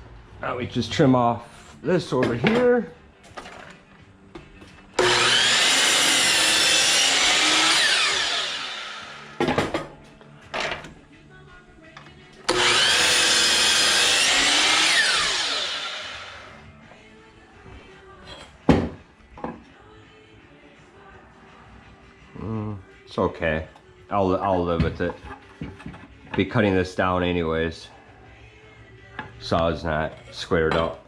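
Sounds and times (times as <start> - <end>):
saw winding down: 5.0 - 9.4, 12.5 - 16.6
table saw cutting wood: 5.0 - 9.5, 12.5 - 16.6.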